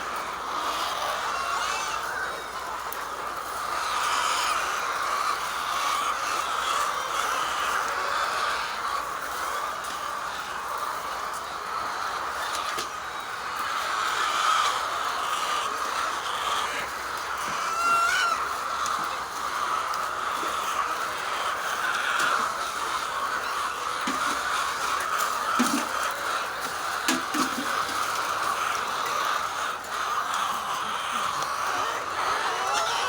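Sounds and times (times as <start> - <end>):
chicks cheeping: 0.0 - 33.0.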